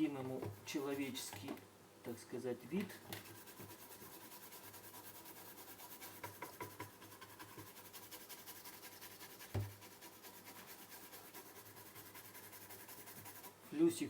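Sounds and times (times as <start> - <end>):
brush scrubbing circuit board: 3.2 - 13.6.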